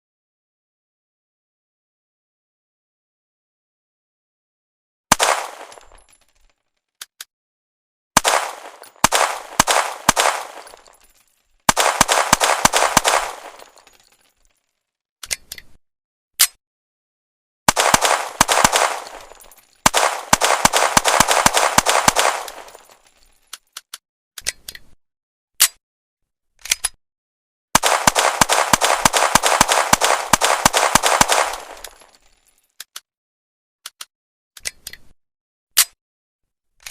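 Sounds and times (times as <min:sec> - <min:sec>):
pistol shots with ringing echo: 0:05.1 - 0:06.0, 0:08.2 - 0:11.0, 0:11.7 - 0:14.0, 0:17.7 - 0:23.0, 0:27.8 - 0:32.1.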